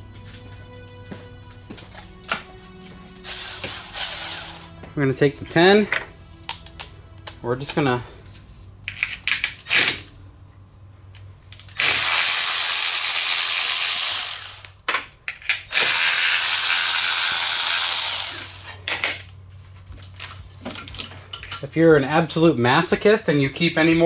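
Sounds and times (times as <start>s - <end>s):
power ratchet running: 3.2s - 4.7s, 11.6s - 14.8s, 15.7s - 18.7s
ratchet and socket clicks: 3.3s - 4.7s, 11.6s - 14.8s, 15.4s - 19.2s.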